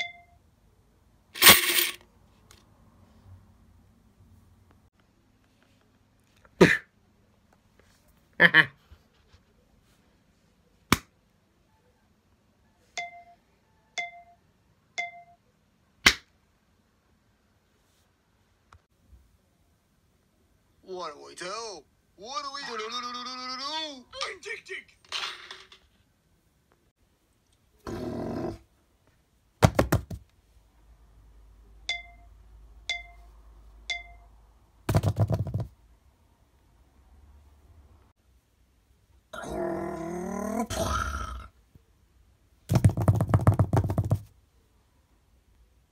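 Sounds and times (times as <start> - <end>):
short ringing pings: 0.0 - 0.4, 13.0 - 13.4, 14.0 - 14.4, 15.0 - 15.4, 31.9 - 33.3, 33.9 - 34.3
growl-like buzz: 27.8 - 28.6, 39.4 - 41.5.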